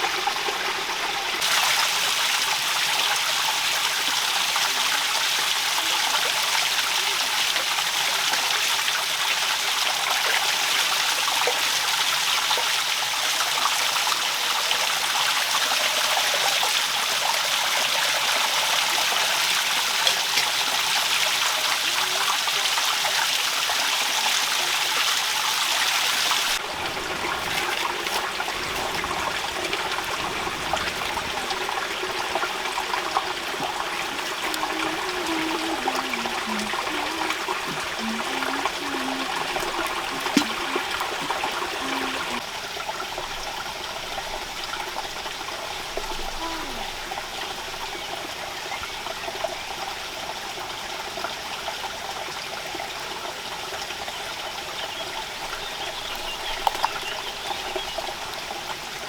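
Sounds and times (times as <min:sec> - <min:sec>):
steady rain hiss: 0:26.4 - 0:48.0.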